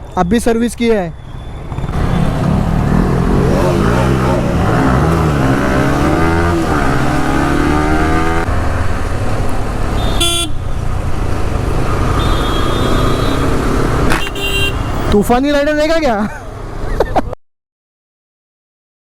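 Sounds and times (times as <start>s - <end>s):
traffic rumble: 0.0s - 17.4s
vehicle engine revving: 1.7s - 9.2s
car horn toot: 10.0s - 10.8s, 12.1s - 13.5s, 14.1s - 15.1s.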